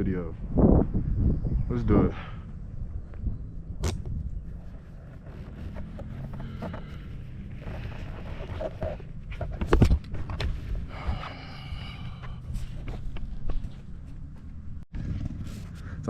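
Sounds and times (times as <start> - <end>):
rustling and scraping: 3.8 - 11.5, 12.2 - 16.0.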